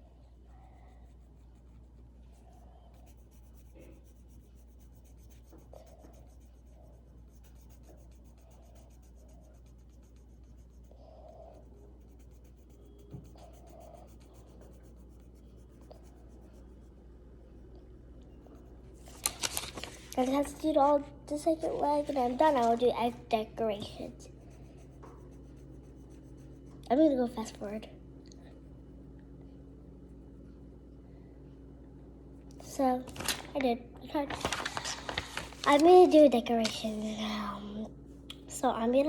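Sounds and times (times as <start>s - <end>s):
low steady hum: 0.0s - 39.0s
drawing tool scratching on paper: 0.7s - 17.0s, 23.7s - 26.9s.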